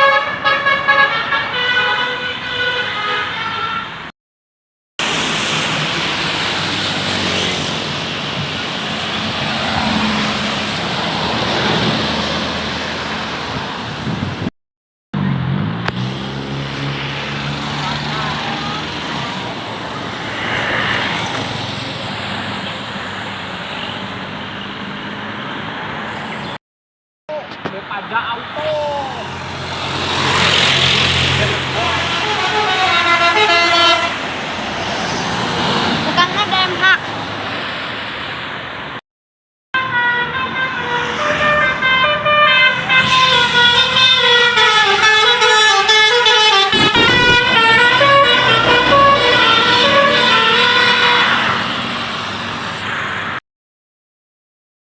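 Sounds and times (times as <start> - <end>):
bus musical horn tune: 0.0 - 4.1, 32.0 - 34.3, 39.8 - 51.6
passing vehicle engine and tyres: 5.0 - 14.5, 15.2 - 26.6, 27.5 - 39.0, 39.8 - 53.4.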